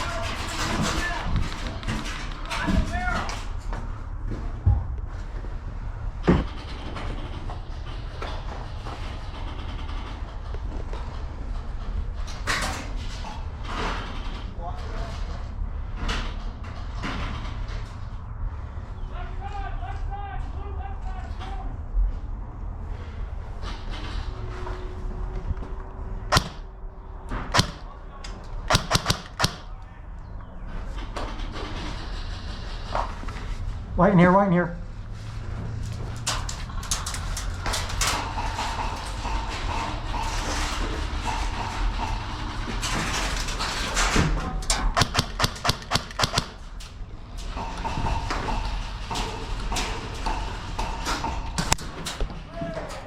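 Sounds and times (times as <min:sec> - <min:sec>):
airsoft gun shots: 0:26.3 - 0:26.7, 0:27.5 - 0:27.9, 0:28.7 - 0:29.8, 0:45.0 - 0:46.6.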